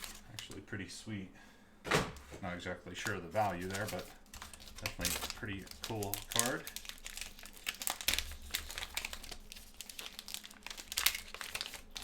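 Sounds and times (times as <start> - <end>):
plastic packaging crinkling: 0.0 - 0.6, 3.0 - 12.0.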